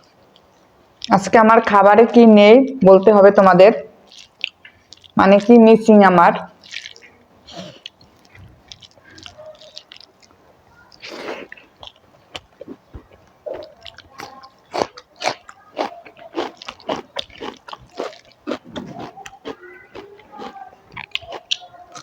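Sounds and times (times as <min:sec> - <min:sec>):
chewing food: 0:04.0 - 0:05.6, 0:06.4 - 0:22.0.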